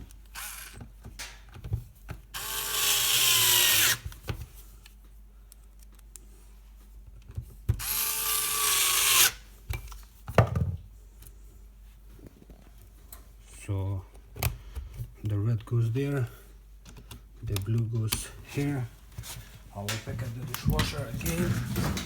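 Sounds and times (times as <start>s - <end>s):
power drill driving screws: 0.4s - 0.8s, 2.4s - 4.0s, 7.8s - 9.4s.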